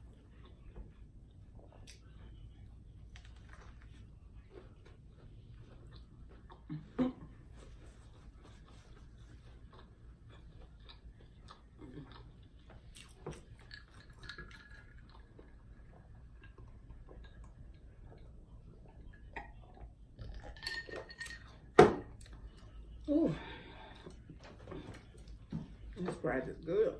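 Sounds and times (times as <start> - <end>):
faint chewing: 0.0 - 20.6
clinks of food and tableware: 20.2 - 22.2.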